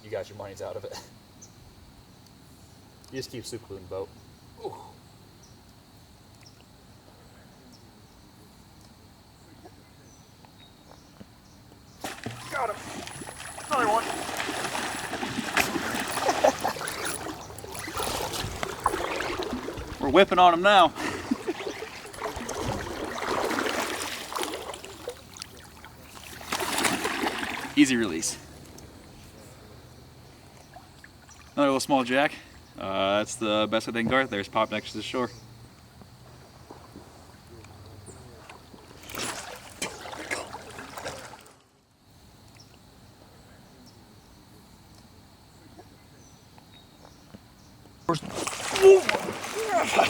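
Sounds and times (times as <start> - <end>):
faint river background: 0.0 - 50.0
water trickling and splashing: 11.9 - 29.1, 30.4 - 32.1, 36.0 - 41.7, 48.1 - 50.0.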